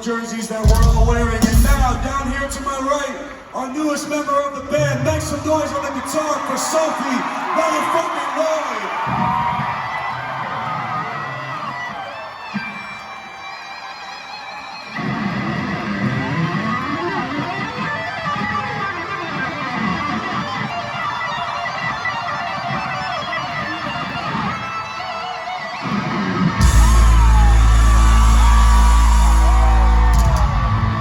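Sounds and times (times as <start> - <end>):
electric guitar solo: 10.6 - 31.0.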